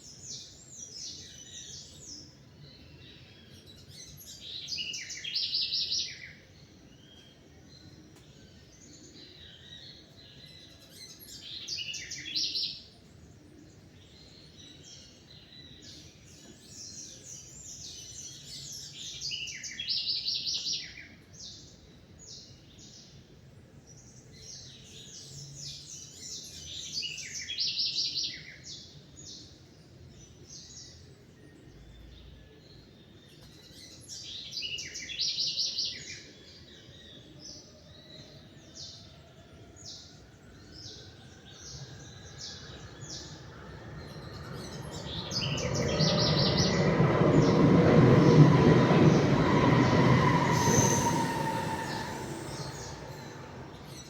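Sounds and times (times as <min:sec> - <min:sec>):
songbirds chirping: 0:00.0 - 0:54.0
rushing rumble with rising whine: 0:42.5 - 0:54.0.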